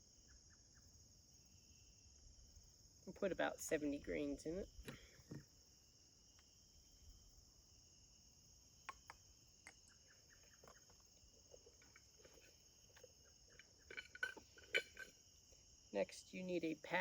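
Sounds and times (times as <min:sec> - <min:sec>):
crickets chirring: 0:00.0 - 0:17.0.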